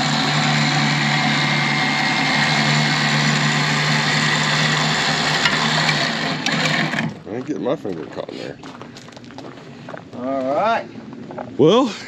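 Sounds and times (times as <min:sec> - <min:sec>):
electric winch whirring: 0:00.0 - 0:07.2.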